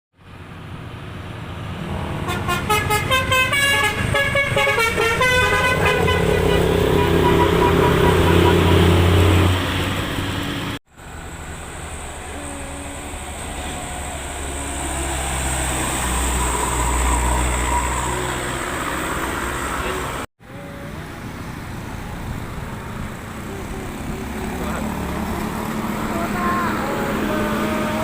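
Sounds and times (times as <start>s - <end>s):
road noise: 0.1s - 28.0s
bus engine rumble: 0.2s - 28.0s
musical air horn: 2.2s - 9.4s.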